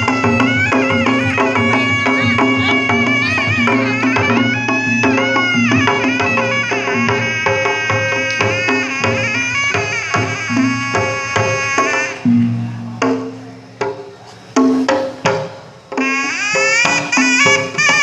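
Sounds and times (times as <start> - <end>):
held low tones: 0.0 - 7.5, 8.3 - 15.0
reedy wind instrument melody: 0.0 - 14.9, 15.9 - 18.0
steady drumming: 0.0 - 18.0.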